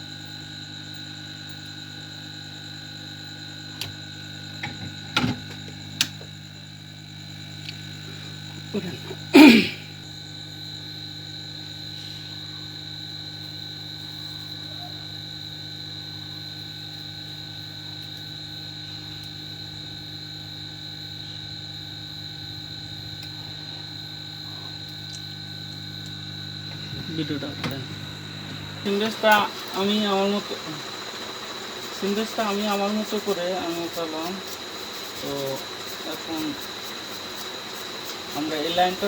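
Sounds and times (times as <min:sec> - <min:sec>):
steady hum with fixed tones: 0:15.4 - 0:39.0.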